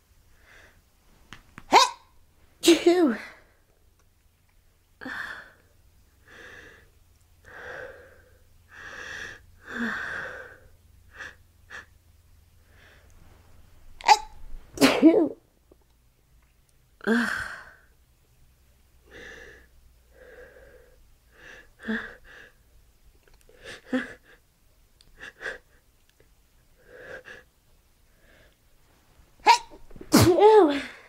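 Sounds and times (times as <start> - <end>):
woman sneezing: 1.7 - 2.0, 14.0 - 15.4, 29.4 - 31.0.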